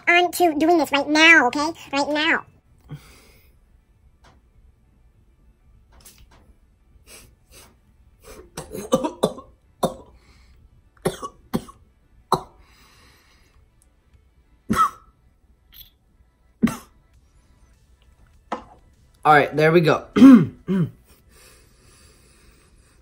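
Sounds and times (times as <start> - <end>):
person coughing: 8.3 - 10.2, 11.0 - 12.6, 14.7 - 15.1, 16.6 - 16.9, 20.2 - 21.1
person clearing throat: 8.4 - 10.1, 11.0 - 12.6, 14.7 - 15.1, 16.6 - 16.9, 20.2 - 21.1.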